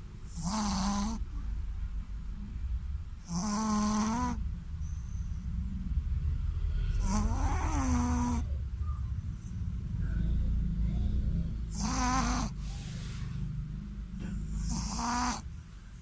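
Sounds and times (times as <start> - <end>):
dog snoring: 0.2 - 1.5, 3.2 - 5.4, 6.8 - 8.6, 9.4 - 16.0.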